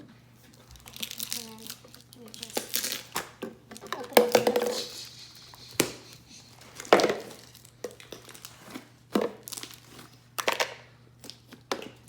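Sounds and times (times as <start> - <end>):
slime crackling and squelching: 0.7 - 3.2.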